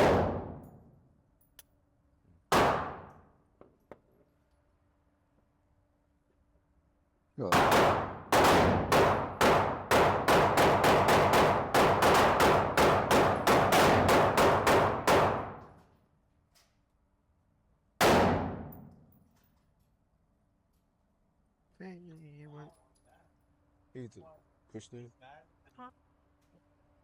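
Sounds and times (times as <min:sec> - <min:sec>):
handgun shots ringing: 0:07.5 - 0:15.7, 0:18.0 - 0:19.1.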